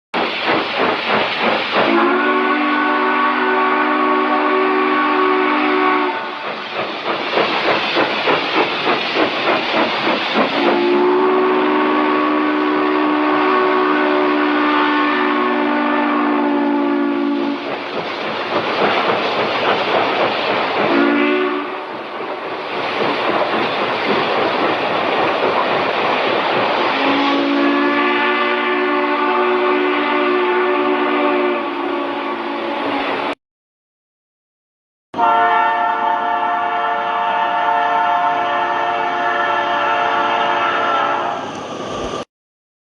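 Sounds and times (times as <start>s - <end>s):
rushing train noise: 0.1s - 33.4s, 35.2s - 42.3s
fast rhythmic train clatter: 0.2s - 31.4s
train whistle chord blasts: 1.8s - 6.4s, 10.6s - 17.6s, 20.9s - 22.4s, 26.9s - 33.0s, 35.2s - 41.4s.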